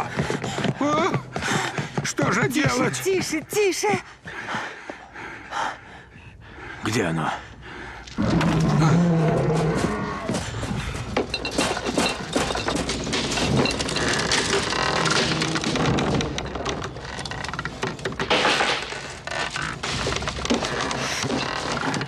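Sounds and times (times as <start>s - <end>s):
heavy thuds cracks and breaking: 11.5s - 22.0s.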